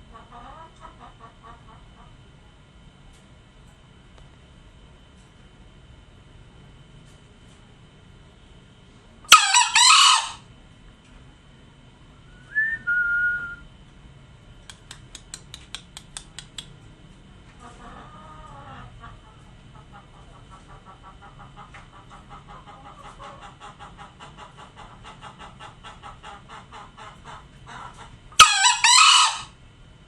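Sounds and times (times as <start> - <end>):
junglefowl crowing: 9.3 - 10.5, 26.0 - 29.6.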